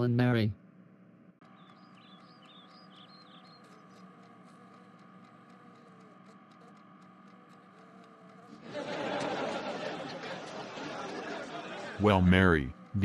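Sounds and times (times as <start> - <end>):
low hum: 0.0 - 13.0
faint ticks: 1.5 - 9.6.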